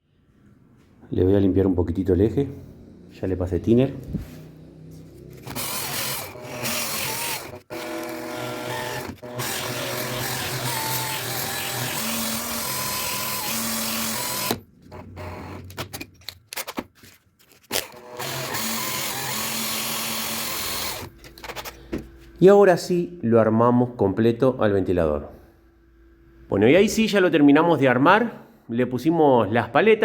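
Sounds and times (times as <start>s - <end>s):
small power tool motor running: 5.3s - 15.6s, 17.7s - 21.1s.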